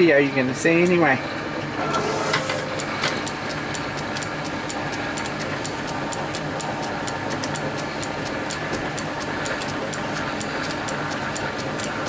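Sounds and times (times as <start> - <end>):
metal lathe humming: 1.6 - 3.5
regular light ticking: 2.6 - 12.0.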